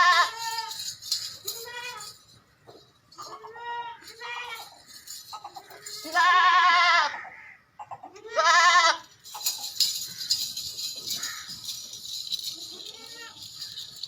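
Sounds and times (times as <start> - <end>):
goat bleating: 0.0 - 0.8, 1.5 - 2.2, 3.2 - 9.1, 12.6 - 13.7.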